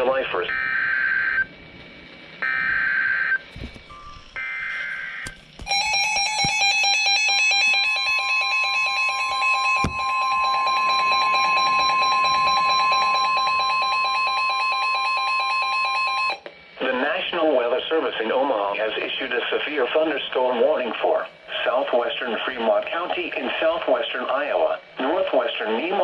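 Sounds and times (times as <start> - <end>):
rapidly pulsing electronic alarm: 0.0 - 20.6
steady high alert tone: 3.9 - 17.0.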